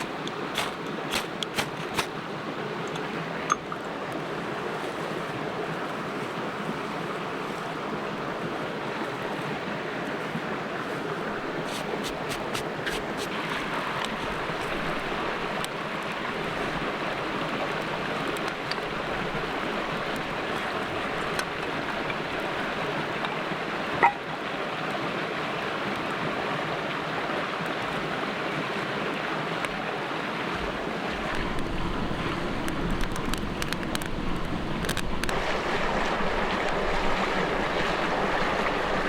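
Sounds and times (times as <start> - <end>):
creek water rushing: 0.0 - 39.0.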